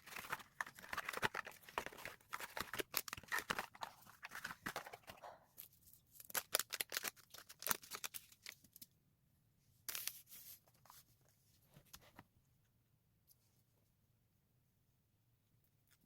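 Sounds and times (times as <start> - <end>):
rustling and crinkling: 0.0 - 8.8.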